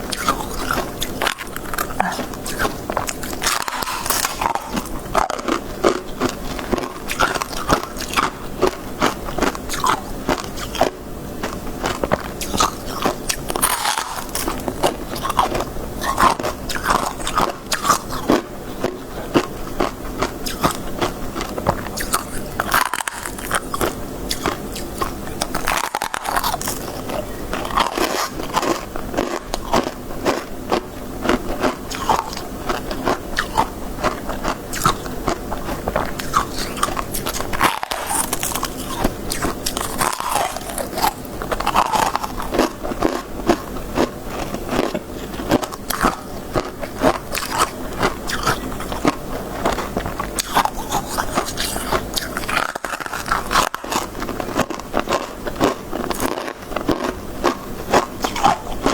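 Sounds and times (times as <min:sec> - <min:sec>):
crunching frost ice: 0:11.9 - 0:18.3, 0:25.0 - 0:29.9, 0:36.2 - 0:44.1.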